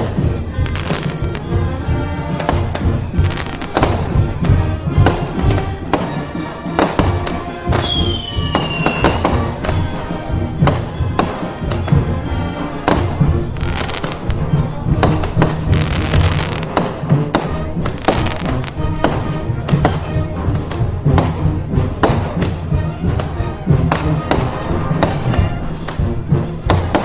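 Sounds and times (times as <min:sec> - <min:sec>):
festival band music: 0:00.0 - 0:27.0
firecrackers popping: 0:00.0 - 0:27.0
short falling whistle: 0:07.8 - 0:09.2.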